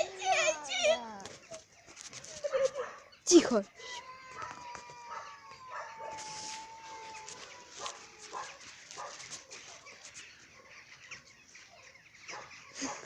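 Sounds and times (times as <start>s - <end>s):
cat yowling: 0.0s - 1.6s, 3.8s - 8.6s.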